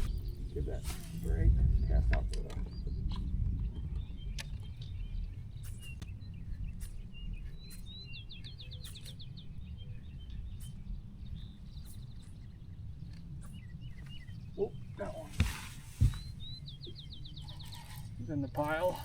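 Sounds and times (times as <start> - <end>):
steady low rumble: 0.0 - 18.6
songbirds chirping: 0.0 - 19.0
bird trill: 16.1 - 19.0.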